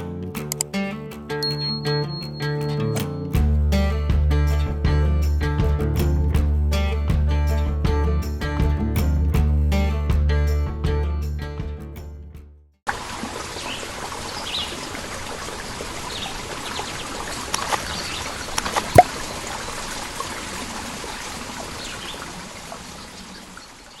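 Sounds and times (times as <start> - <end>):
trickle of running water: 12.9 - 24.0.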